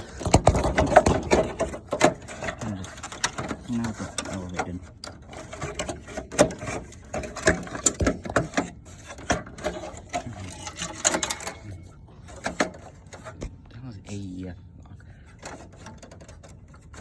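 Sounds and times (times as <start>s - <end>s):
computer parts clicking and rattling: 0.0s - 13.5s, 15.3s - 17.0s.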